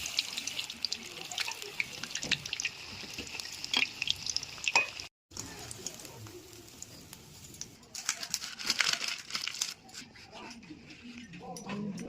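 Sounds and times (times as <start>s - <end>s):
hot oil sizzling and popping: 0.0s - 9.8s.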